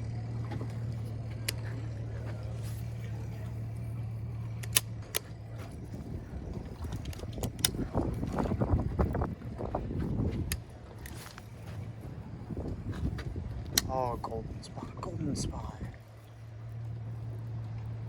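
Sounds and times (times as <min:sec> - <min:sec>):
boat motor humming: 0:00.0 - 0:18.0
sharp clicks: 0:04.5 - 0:05.3, 0:06.8 - 0:08.2
wind buffeting microphone: 0:05.0 - 0:16.0.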